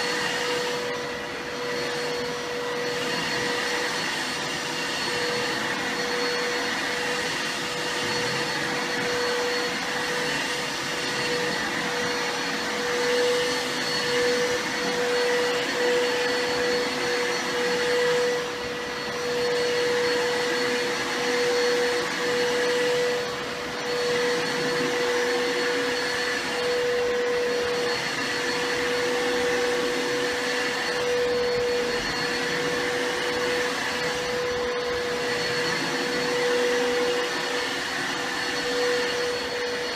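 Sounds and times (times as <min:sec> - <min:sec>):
vacuum cleaner motor whining: 0:00.0 - 0:39.9.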